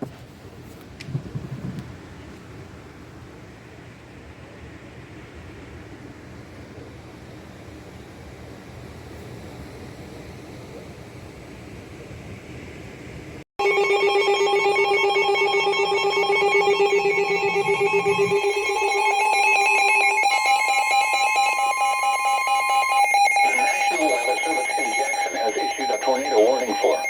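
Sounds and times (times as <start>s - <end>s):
electronic alert tone warbling: 13.6s - 27.0s.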